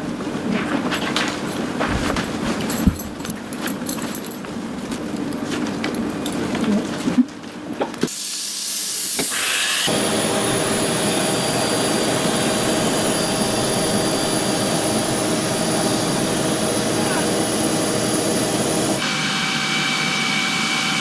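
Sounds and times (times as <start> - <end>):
jet engine running: 9.3 - 21.0.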